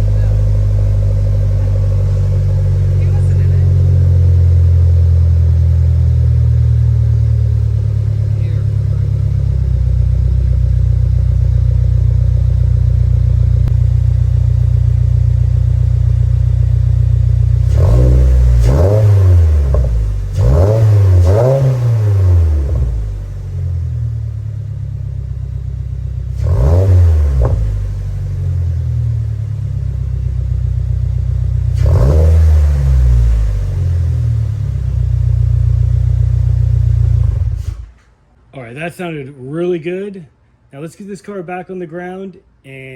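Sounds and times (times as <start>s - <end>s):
engine revving: 0.0s - 14.1s, 15.4s - 24.2s, 26.2s - 29.4s, 31.5s - 38.0s
car engine idling: 0.0s - 38.4s.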